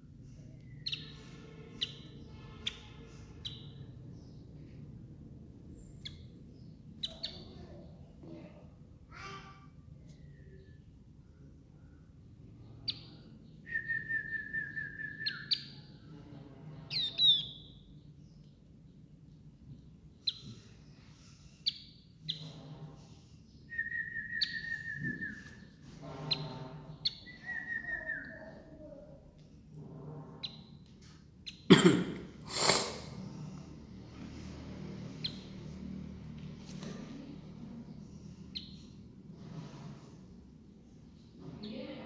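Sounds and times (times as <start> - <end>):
young birds chirping: 0.6 - 4.8, 5.8 - 8.0, 12.7 - 16.1, 16.9 - 18.6, 20.1 - 28.9.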